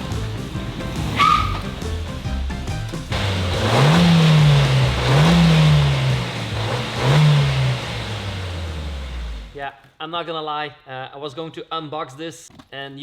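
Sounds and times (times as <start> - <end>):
car engine revving: 0.0 - 9.6.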